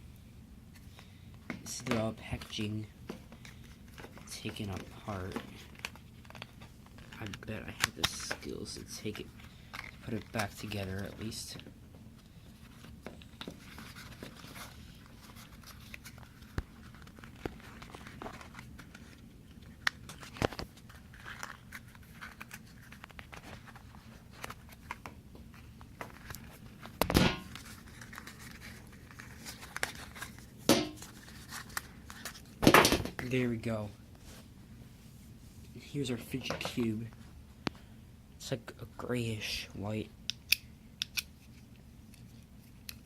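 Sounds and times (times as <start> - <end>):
packaging crinkling: 12.7 - 32.6.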